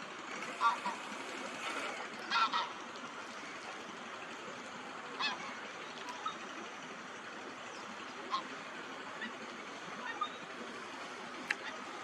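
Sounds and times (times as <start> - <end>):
geese honking: 0.0 - 3.9, 5.1 - 6.5, 8.0 - 12.0
steady background hiss: 0.0 - 12.0.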